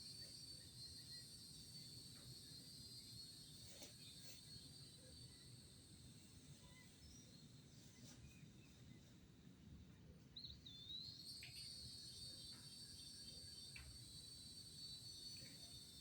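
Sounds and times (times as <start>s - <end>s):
high-pitched insect drone: 0.0s - 7.0s, 11.2s - 16.0s
bird-like chirp: 10.4s - 16.0s.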